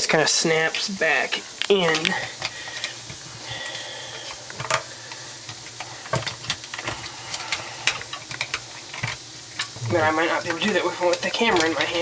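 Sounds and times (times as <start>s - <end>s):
faint steady hiss: 0.0s - 12.0s
plastic parts clicking and knocking: 4.5s - 4.9s, 5.5s - 9.8s.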